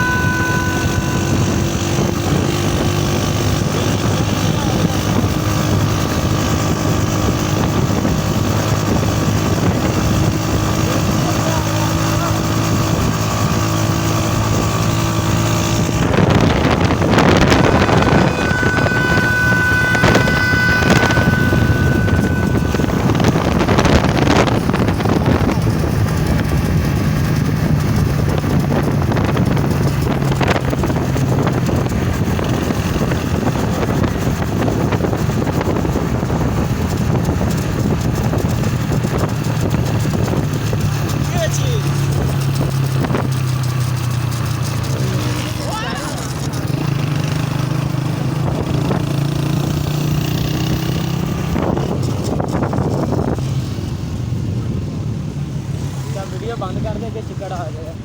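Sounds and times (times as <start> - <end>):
train-style horn blast: 0.0 - 27.9
motorcycle engine running: 0.0 - 58.0
wind noise on microphone: 0.0 - 58.0.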